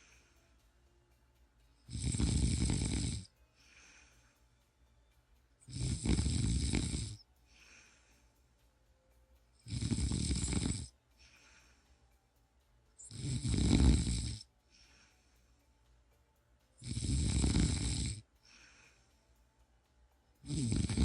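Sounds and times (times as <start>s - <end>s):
faint breath: 0.0s - 1.0s, 3.3s - 5.2s, 7.2s - 9.4s, 11.1s - 12.5s, 14.5s - 16.2s, 18.3s - 19.7s
person snoring: 1.9s - 4.3s, 5.7s - 8.1s, 9.6s - 11.8s, 13.0s - 15.2s, 16.8s - 19.0s, 20.4s - 21.0s.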